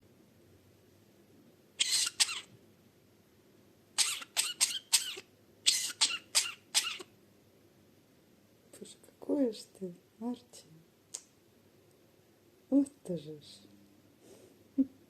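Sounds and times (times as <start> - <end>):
budgerigar raspy cough-like sounds: 4.0 - 7.1.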